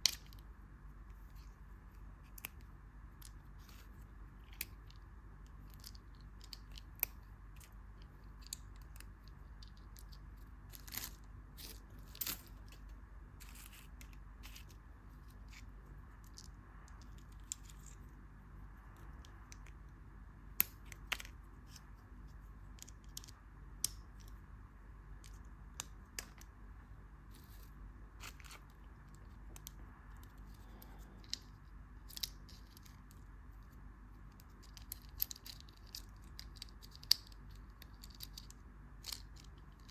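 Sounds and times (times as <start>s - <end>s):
faint low hum: 0.0s - 39.9s.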